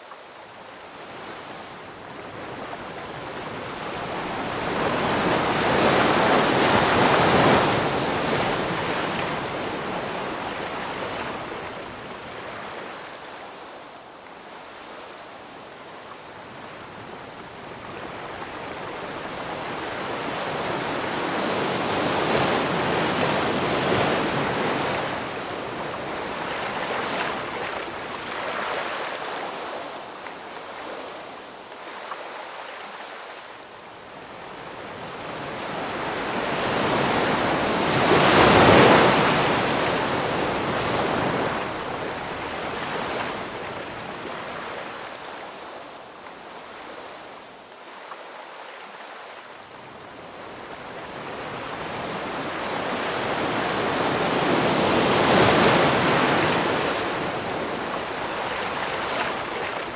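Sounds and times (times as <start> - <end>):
ocean waves breaking: 34.8 - 45.3.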